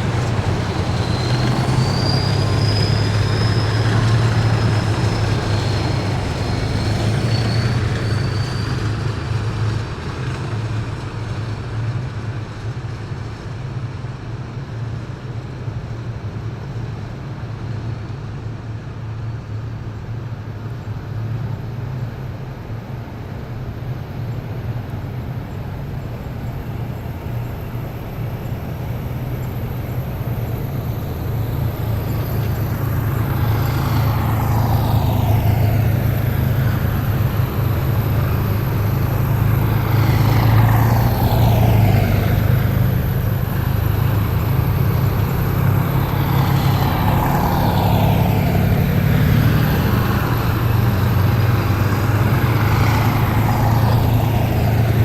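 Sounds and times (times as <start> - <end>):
low engine drone: 0.0 - 10.2, 18.0 - 55.0
vehicles passing with whine: 0.0 - 55.0.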